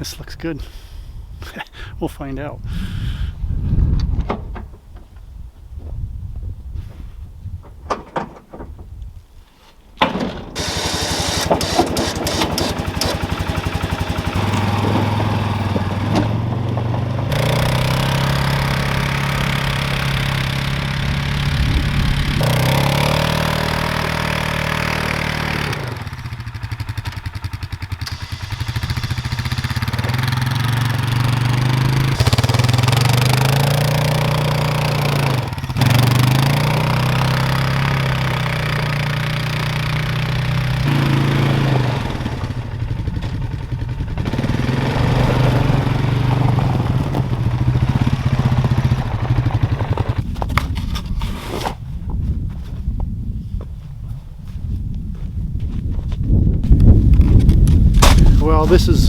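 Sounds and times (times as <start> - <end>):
atv engine revving: 10.0 - 50.4.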